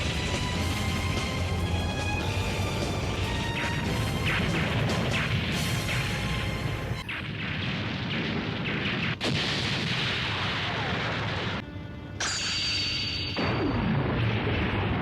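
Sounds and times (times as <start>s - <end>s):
cartoon explosions and crashes: 2.4s - 11.6s, 12.2s - 15.0s.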